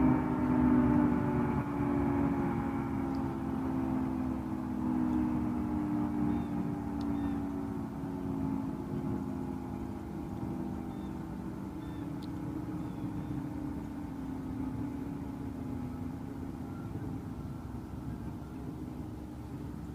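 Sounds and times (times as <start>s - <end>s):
three-tone warning siren: 0.0s - 19.4s.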